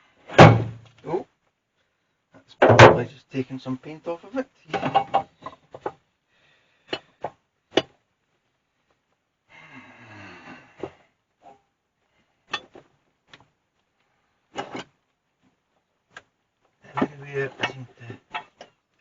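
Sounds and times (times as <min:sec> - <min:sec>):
heavy metal knocks and clunks: 0:00.3 - 0:00.8, 0:02.6 - 0:03.1.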